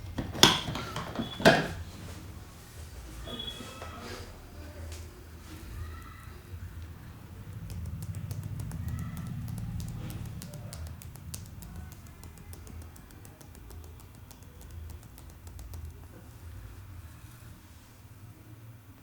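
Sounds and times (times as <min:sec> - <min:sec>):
low rumble of hands: 0:05.5 - 0:17.6
crackling clicks from scalp massage: 0:06.0 - 0:16.4.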